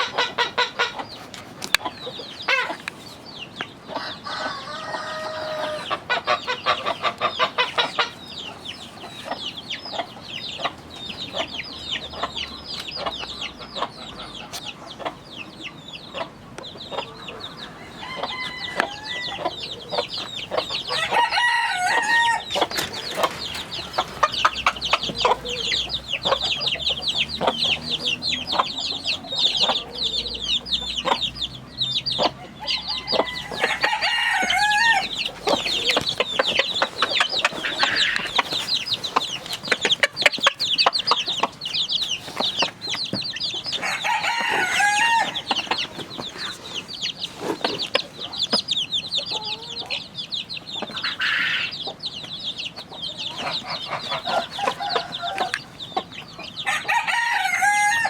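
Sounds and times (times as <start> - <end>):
chickens calling: 0.0 - 58.0
rooster crowing: 4.0 - 6.5, 17.2 - 20.0, 20.6 - 23.3, 32.4 - 36.7, 43.7 - 45.8, 54.1 - 55.6, 56.6 - 58.0.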